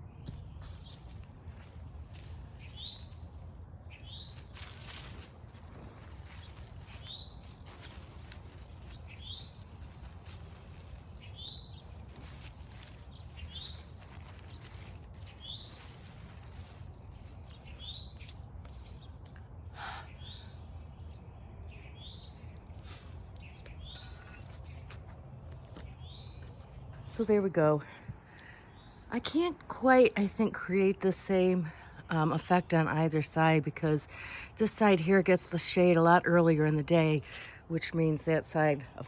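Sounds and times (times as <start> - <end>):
bird rising chirp: 0.0 - 19.2
outdoor background: 0.0 - 39.0.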